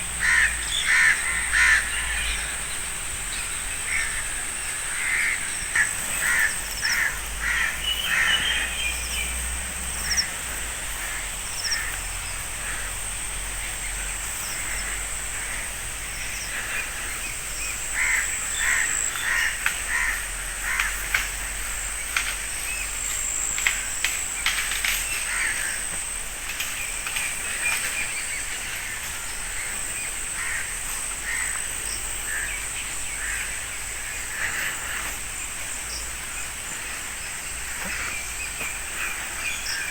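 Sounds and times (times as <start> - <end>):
steady high-pitched hiss: 0.0 - 39.9
crows cawing: 0.2 - 2.6, 3.8 - 8.9, 10.1 - 13.5, 14.5 - 21.6, 25.2 - 26.0, 28.7 - 35.2.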